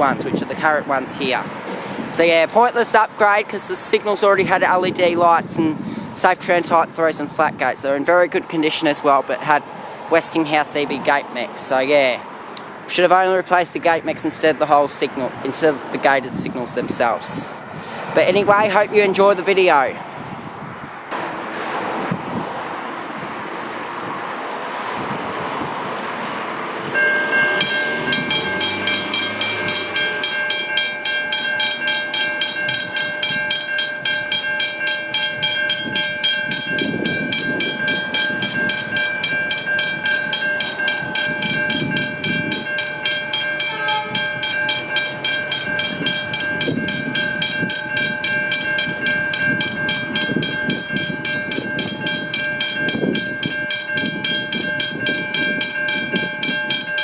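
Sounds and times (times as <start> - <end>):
steady rushing noise: 25.0 - 57.0
level-crossing bell ringing: 26.9 - 57.0
low rumbles: 26.9 - 57.0.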